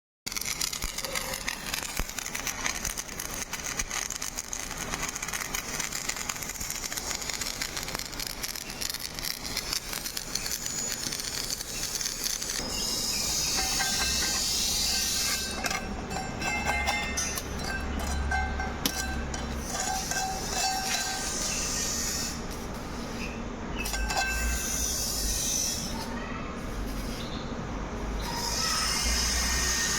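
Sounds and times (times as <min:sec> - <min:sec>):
welding arc crackling: 0:00.3 - 0:23.2.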